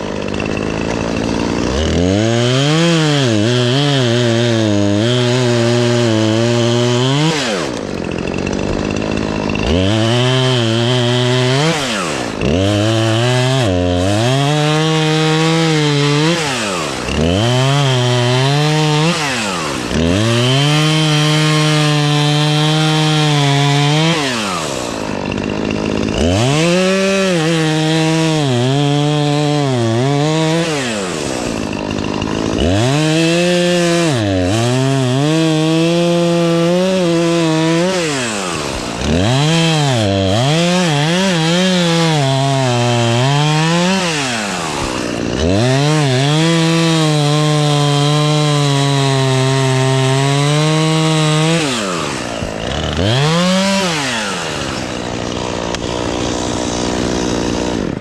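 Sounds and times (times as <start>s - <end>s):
chainsaw cutting tree limbs: 0.0s - 58.0s.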